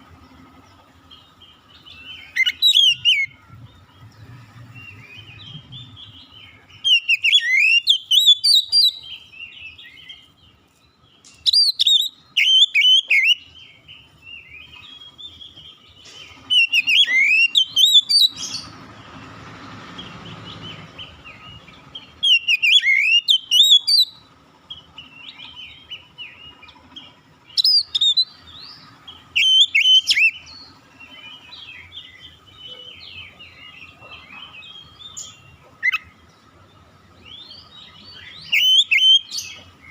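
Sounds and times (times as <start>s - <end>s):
bird twittering: 0.0s - 19.0s, 20.0s - 39.9s
bird singing whistled phrases: 1.7s - 3.4s, 4.8s - 10.3s, 11.4s - 13.6s, 16.4s - 18.7s, 22.2s - 24.2s, 27.5s - 28.4s, 29.4s - 33.7s, 37.3s - 39.6s.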